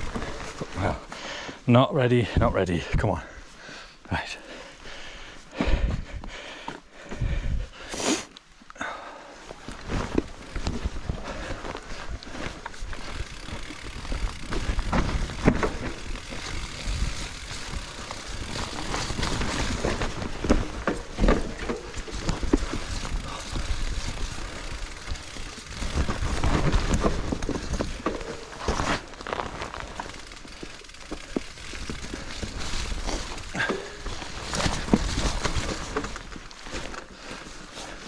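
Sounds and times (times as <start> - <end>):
bike knocking and rattling: 0.0 - 1.6, 9.4 - 38.0
tyres crunching on dirt and rock: 9.4 - 38.0.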